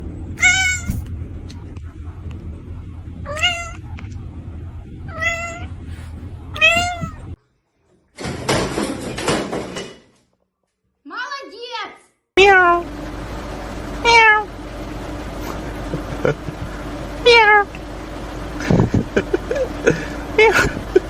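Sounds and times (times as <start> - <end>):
low steady hum: 0.0 - 7.4, 12.4 - 21.0
cat meowing: 0.4 - 1.1, 3.3 - 3.8, 5.1 - 5.7, 6.6 - 7.4, 14.1 - 14.5.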